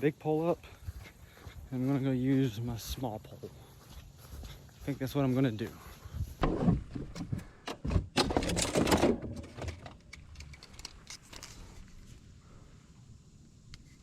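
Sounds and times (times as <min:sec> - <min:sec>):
rustling and clicking handling noise: 0:06.4 - 0:12.2.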